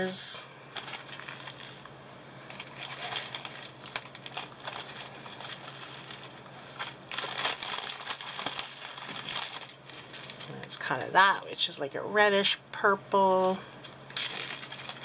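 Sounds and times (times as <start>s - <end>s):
plastic bags crinkling: 0.7s - 11.2s, 13.8s - 15.0s.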